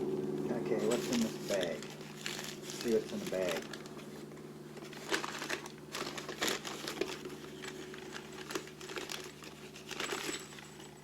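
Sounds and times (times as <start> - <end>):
bag crinkling: 0.7 - 11.0.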